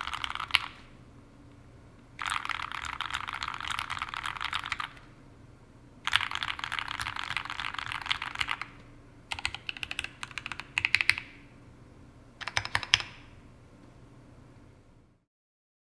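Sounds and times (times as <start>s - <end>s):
mechanical keyboard typing: 0.0s - 0.9s, 2.2s - 5.0s, 6.1s - 11.4s, 12.4s - 13.3s.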